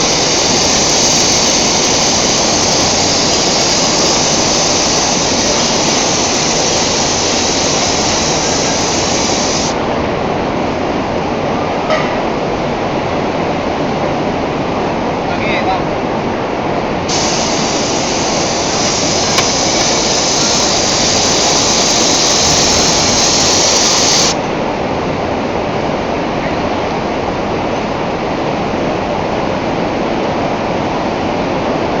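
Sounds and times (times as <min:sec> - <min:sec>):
oxygen lance hissing and crackling: 0:00.0 - 0:09.8, 0:17.1 - 0:24.4
steady background noise: 0:00.0 - 0:32.0.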